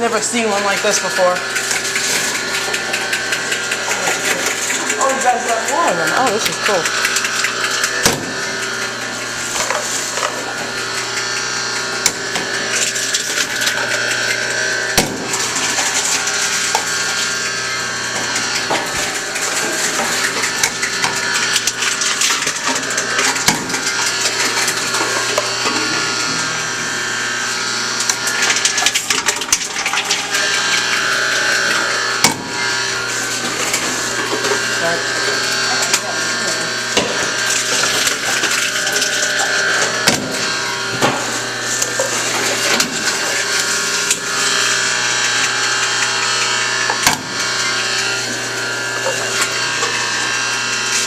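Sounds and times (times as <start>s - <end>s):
crusher crackling and clattering: 0.0s - 26.4s
machine humming: 0.0s - 51.0s.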